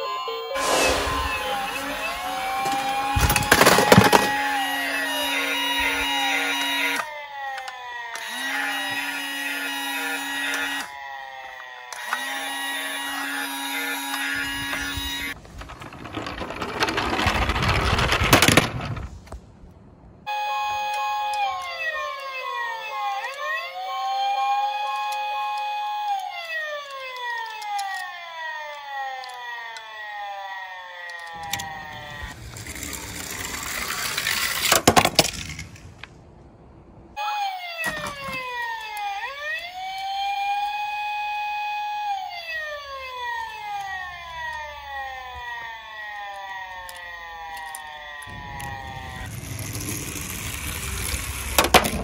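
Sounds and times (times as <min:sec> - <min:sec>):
electronic toy siren wailing: 0:00.0 - 0:15.4, 0:20.3 - 0:34.8, 0:37.2 - 0:52.0
toy cars rattling down plastic slope: 0:00.6 - 0:07.0, 0:12.0 - 0:19.3, 0:31.1 - 0:36.1, 0:46.9 - 0:52.0.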